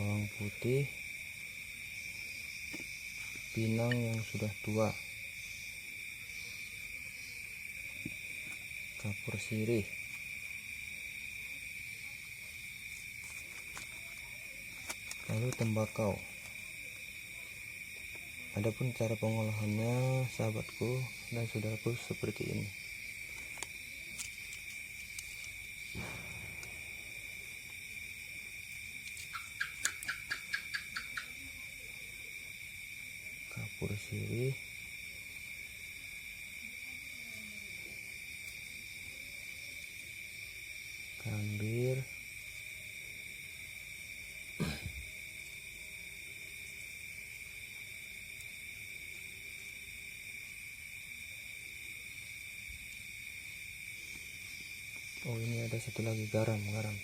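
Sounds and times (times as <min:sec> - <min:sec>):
insects droning: 0:00.0 - 0:57.0
soft thump: 0:25.9 - 0:26.9
animal chirps: 0:29.2 - 0:31.5.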